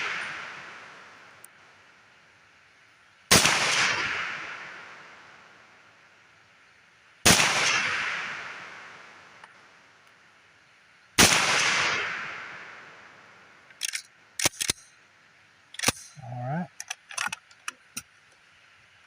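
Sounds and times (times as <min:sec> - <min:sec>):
rifle shots with echo: 0:03.3 - 0:05.3, 0:07.2 - 0:09.1, 0:11.2 - 0:13.3.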